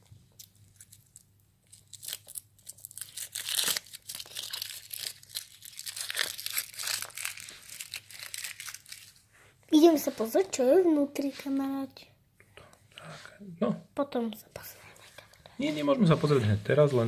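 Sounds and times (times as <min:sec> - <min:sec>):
foil wrapper crinkling: 0:00.3 - 0:09.2.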